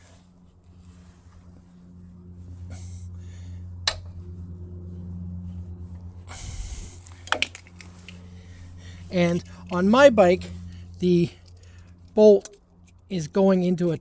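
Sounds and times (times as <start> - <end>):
short rustle: 0.0 - 3.0
low electrical hum: 0.0 - 14.0.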